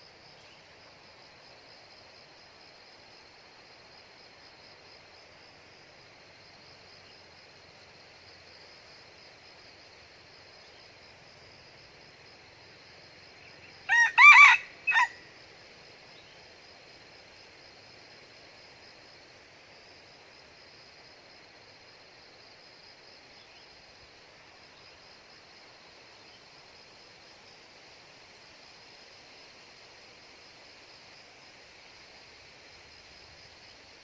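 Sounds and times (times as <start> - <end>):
faint high insect buzz: 0.0 - 34.0
junglefowl crowing: 13.9 - 15.3.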